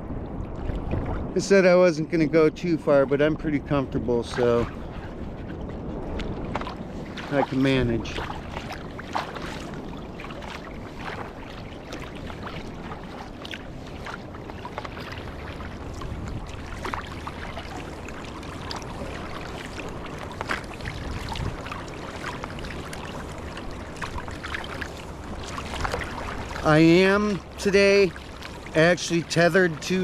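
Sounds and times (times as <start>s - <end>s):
waves washing: 0.0s - 30.0s
water slapping against kayak hull: 0.3s - 1.5s, 4.1s - 30.0s
small splashes: 6.4s - 30.0s.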